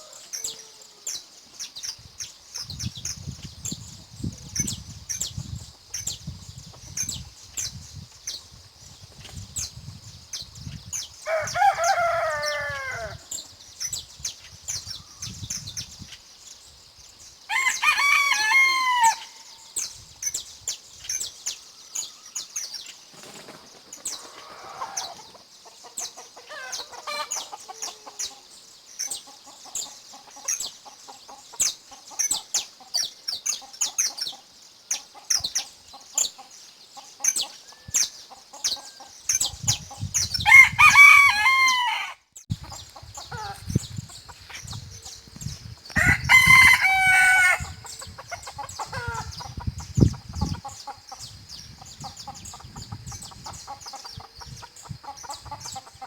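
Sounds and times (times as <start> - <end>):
rooster crowing: 0.0 - 1.0, 11.2 - 13.4, 17.5 - 19.5, 40.4 - 42.2, 46.0 - 47.9
songbirds chirping: 0.0 - 56.0
chickens clucking: 23.2 - 40.5, 42.5 - 56.0.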